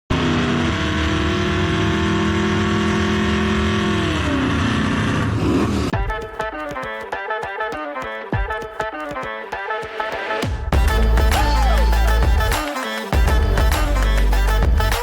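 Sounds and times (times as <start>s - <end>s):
car engine running: 0.1s - 5.9s
music: 5.9s - 15.0s.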